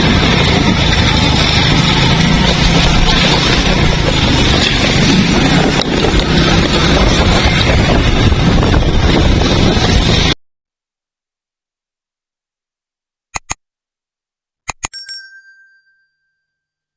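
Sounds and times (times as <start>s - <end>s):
heavy rain pouring: 0.0s - 10.3s
wind buffeting microphone: 0.0s - 10.4s.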